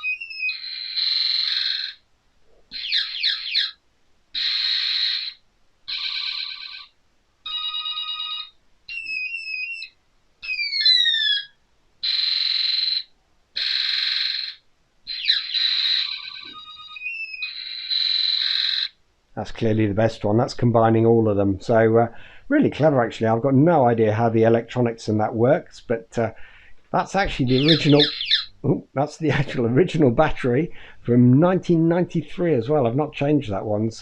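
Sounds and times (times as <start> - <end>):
synthesized sound effects from toy speaker: 0.0 - 2.0, 2.7 - 3.7, 4.4 - 6.9, 8.4 - 19.0, 27.2 - 28.5.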